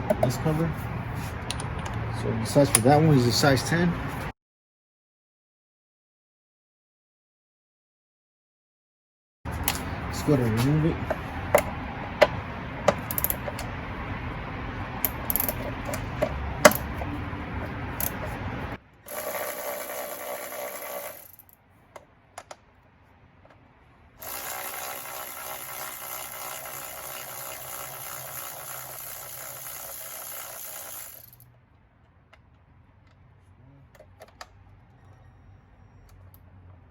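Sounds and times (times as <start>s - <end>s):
cordless electric ratchet running: 13.0s - 13.6s, 19.1s - 21.5s, 24.2s - 31.4s
clicks and handling noise: 31.3s - 35.2s.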